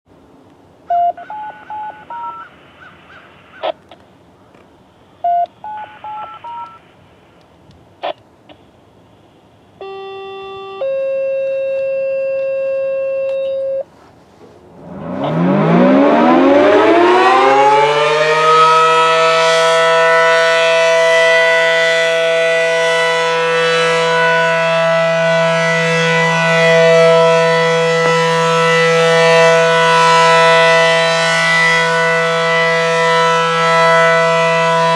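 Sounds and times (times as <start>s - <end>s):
steady electronic tone: 14.6s - 34.9s
outdoor warning siren winding up: 14.8s - 34.9s.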